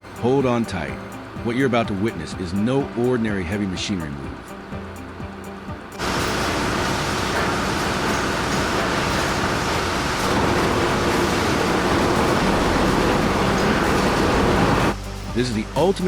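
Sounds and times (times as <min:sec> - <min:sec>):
heavy machine running: 0:06.0 - 0:15.0.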